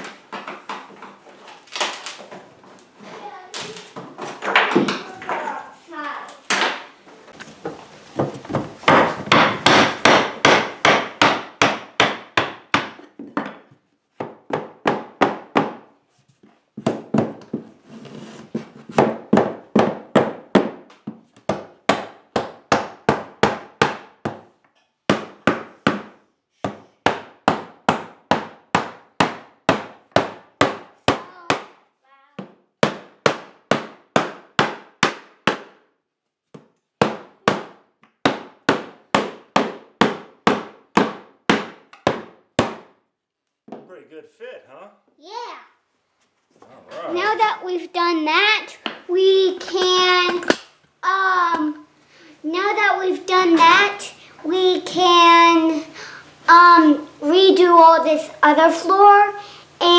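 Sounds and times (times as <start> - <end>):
hammer striking wood: 8.2 - 15.9, 18.9 - 31.8, 32.4 - 35.9, 36.6 - 43.0.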